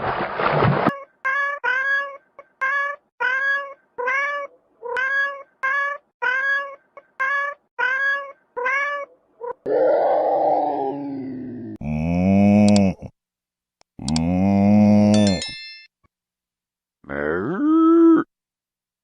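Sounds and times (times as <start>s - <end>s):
cat meowing: 1.3s - 9.6s.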